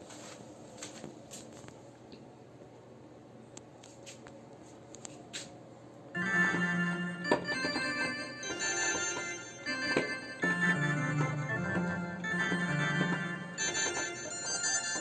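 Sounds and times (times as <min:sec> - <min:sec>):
organ chords: 0:06.2 - 0:15.0.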